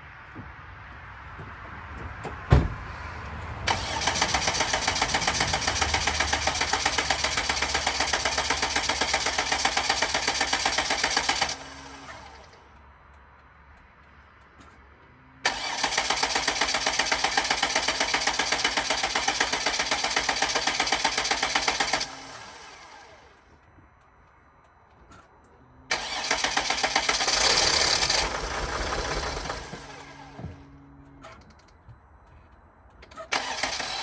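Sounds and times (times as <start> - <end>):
engine briefly starting: 3.7 - 12.6, 15.4 - 23.3, 25.9 - 30.5, 33.2 - 34.0
starter cranking diesel engine: 3.7 - 12.6, 15.4 - 23.4, 25.9 - 30.5, 33.2 - 34.0.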